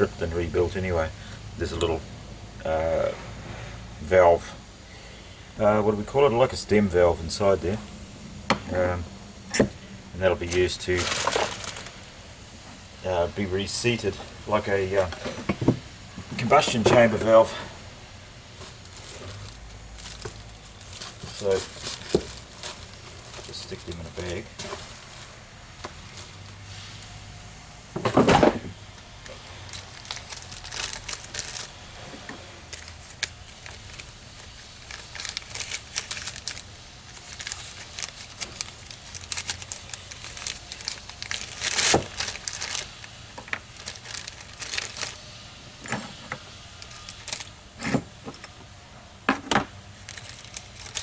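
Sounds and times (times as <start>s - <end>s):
plastic bag crinkling: 9.5s - 17.6s, 18.4s - 27.4s, 28.2s - 45.5s, 46.5s - 47.5s, 50.0s - 51.0s
metal parts clinking: 10.5s - 12.1s, 18.6s - 26.6s, 29.2s - 31.8s, 32.7s - 45.2s, 45.8s - 48.6s, 50.0s - 51.0s.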